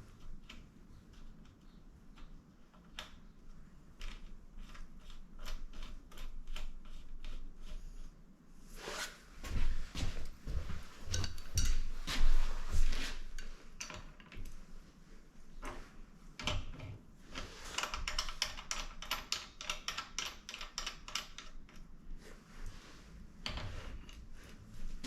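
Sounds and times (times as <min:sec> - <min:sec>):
metallic clicks and taps of tools: 0:17.8 - 0:21.9.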